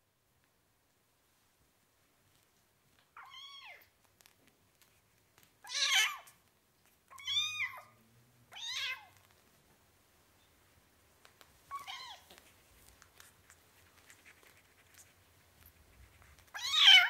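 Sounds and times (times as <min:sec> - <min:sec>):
cat meowing: 0:07.1 - 0:09.2, 0:11.7 - 0:12.3, 0:16.5 - 0:17.0.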